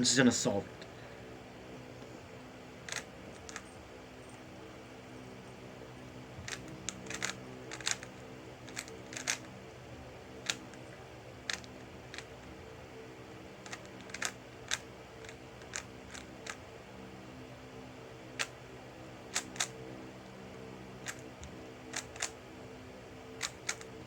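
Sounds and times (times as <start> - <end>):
puzzle cube clicking: 2.9 - 3.6, 6.5 - 8.1, 8.7 - 9.4, 10.4 - 10.8, 11.5 - 12.3, 13.6 - 16.6, 19.3 - 19.7, 21.0 - 21.2, 21.9 - 22.3, 23.4 - 23.9.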